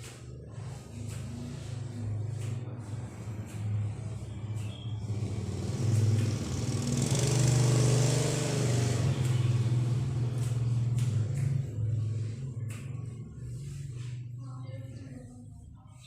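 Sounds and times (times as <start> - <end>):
vehicle engine passing by: 0.0 - 15.1
steady low hum: 8.7 - 16.0.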